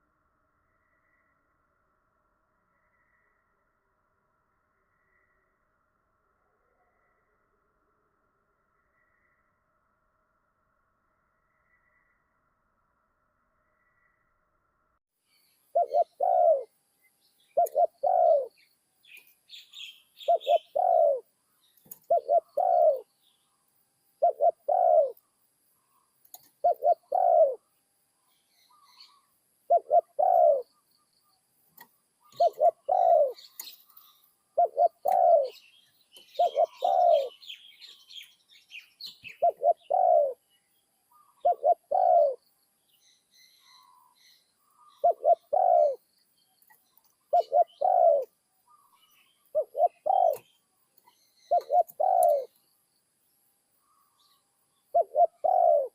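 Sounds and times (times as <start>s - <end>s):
small birds chirping faintly: 0.0s - 55.9s
dove cooing: 15.7s - 16.7s, 17.6s - 18.6s, 19.8s - 23.1s, 24.2s - 25.2s, 26.4s - 27.6s, 28.8s - 30.8s, 32.2s - 38.2s, 39.0s - 40.4s, 41.2s - 42.4s, 44.8s - 46.0s, 47.2s - 50.6s, 51.5s - 52.6s, 54.9s - 55.9s.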